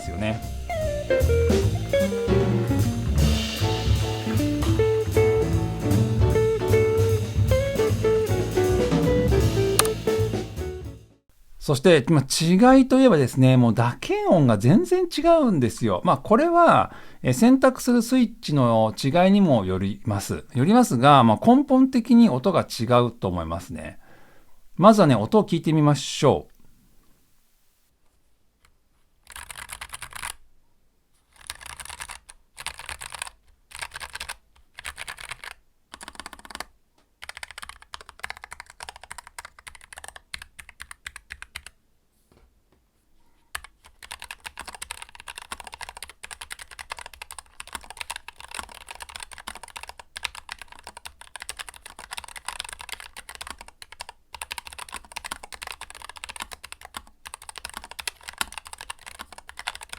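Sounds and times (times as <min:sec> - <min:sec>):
mechanical keyboard typing: 0:29.2 - 0:30.4, 0:31.3 - 0:41.8, 0:43.6 - 0:59.9.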